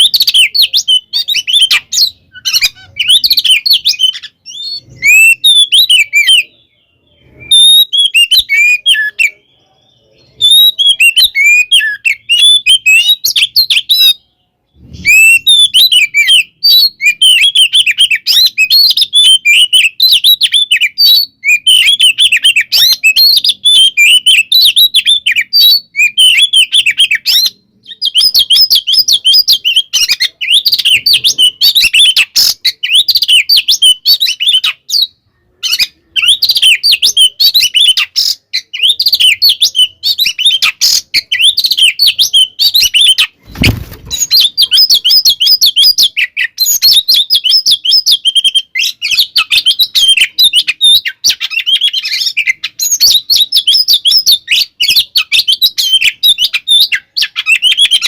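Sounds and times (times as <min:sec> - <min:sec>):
songbird chirps and whistles: 0:00.0 - 0:58.0.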